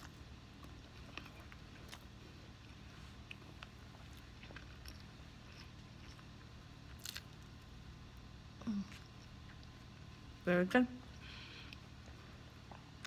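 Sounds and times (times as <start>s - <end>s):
person chewing: 0.0s - 7.6s
low steady hum: 0.0s - 13.0s.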